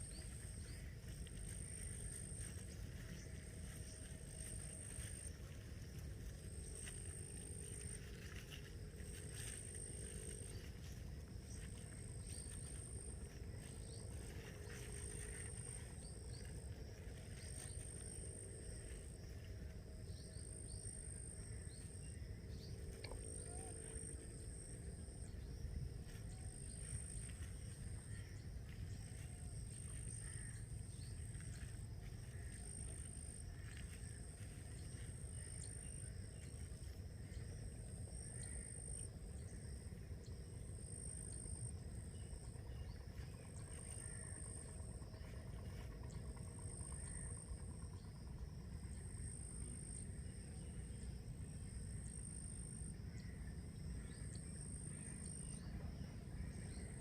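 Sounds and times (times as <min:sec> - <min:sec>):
faint ticks: 0:22.8 - 0:24.0.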